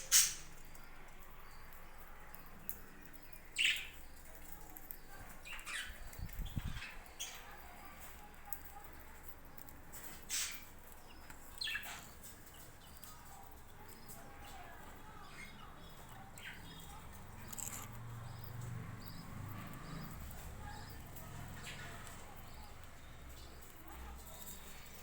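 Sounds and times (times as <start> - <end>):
budgerigars chirping: 0.0 - 0.5.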